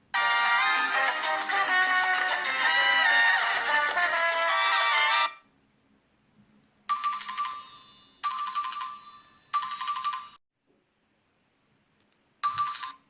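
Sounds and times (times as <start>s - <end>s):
phone ringtone: 6.9s - 10.4s, 12.4s - 13.0s.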